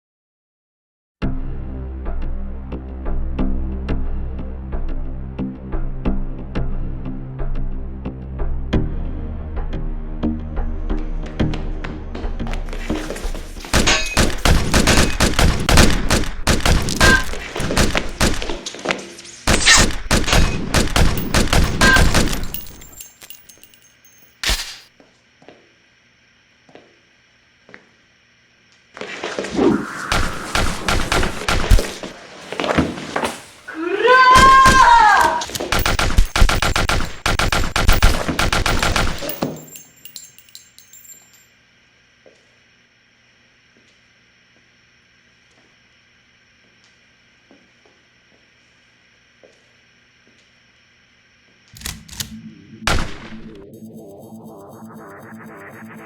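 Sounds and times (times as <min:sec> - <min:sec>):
rapid gunfire volleys: 0:13.7 - 0:18.7, 0:19.5 - 0:23.0, 0:30.1 - 0:32.1, 0:35.6 - 0:39.4.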